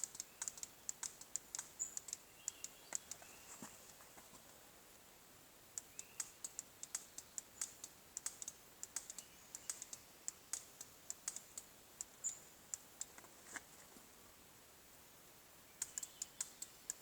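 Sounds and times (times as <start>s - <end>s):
pistol trigger clicking: 5.8s - 11.6s.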